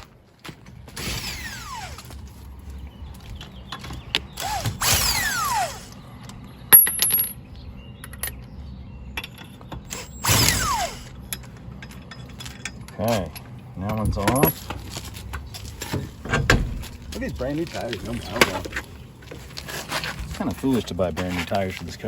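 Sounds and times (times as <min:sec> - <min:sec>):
power tool motor whirring: 0:00.9 - 0:02.3, 0:04.3 - 0:06.0, 0:09.9 - 0:11.2.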